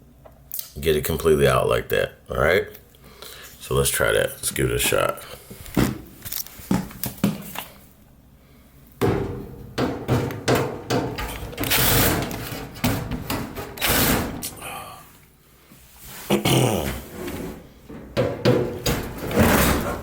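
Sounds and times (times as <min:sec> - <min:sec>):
metallic knocks and rattles: 0:09.0 - 0:14.4, 0:17.8 - 0:20.0.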